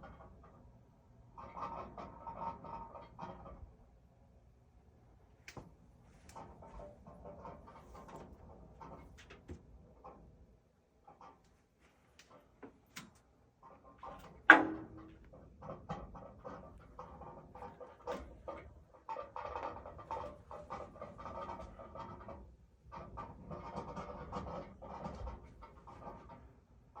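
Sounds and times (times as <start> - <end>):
sharp knock inside wall: 14.5 - 15.2.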